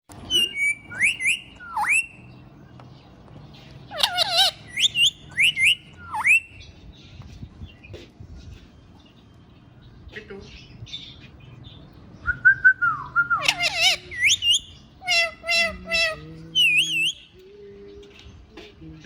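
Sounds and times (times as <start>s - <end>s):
parrot squawking: 0.2s - 2.2s, 3.9s - 6.5s, 13.4s - 17.2s
parrot warbled call: 0.3s - 2.2s, 3.9s - 6.5s, 13.4s - 17.2s.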